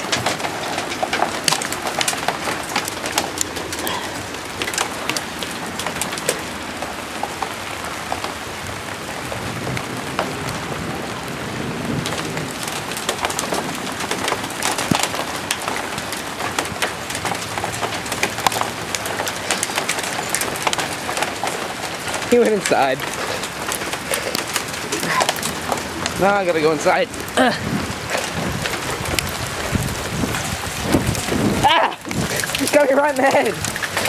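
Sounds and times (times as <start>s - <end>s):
hail and rain falling: 0.0s - 34.0s
hailstones ticking on hard surfaces: 0.0s - 34.0s.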